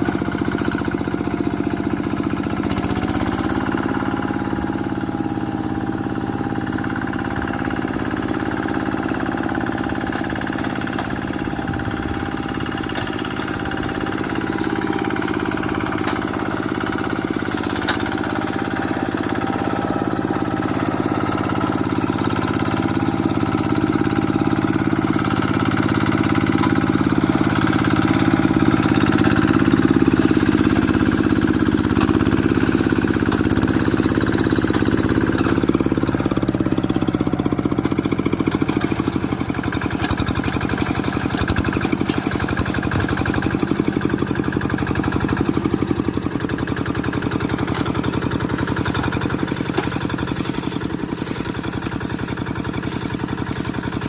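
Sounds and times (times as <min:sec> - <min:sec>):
diesel tractor engine running: 0:00.0 - 0:54.0.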